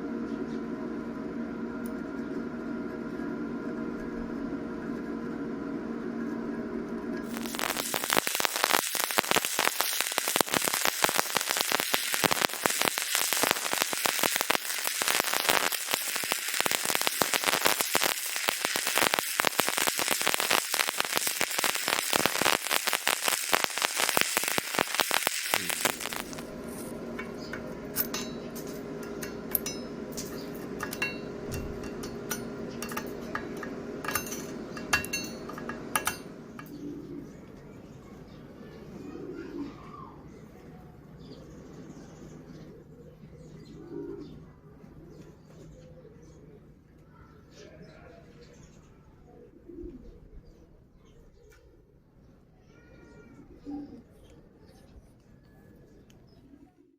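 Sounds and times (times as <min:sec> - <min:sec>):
steady hum: 0:05.8 - 0:37.3
welding arc crackling: 0:07.2 - 0:36.3.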